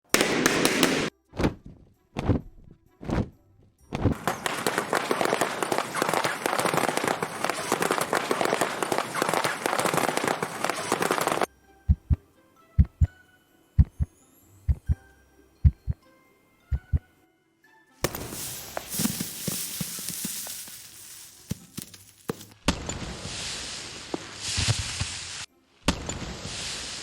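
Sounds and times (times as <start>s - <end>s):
dense rapid crackling: 4.2s - 11.5s
paired low thumps: 11.9s - 12.2s, 12.8s - 13.1s, 13.8s - 14.1s, 14.7s - 15.0s, 15.7s - 16.0s, 16.7s - 17.0s.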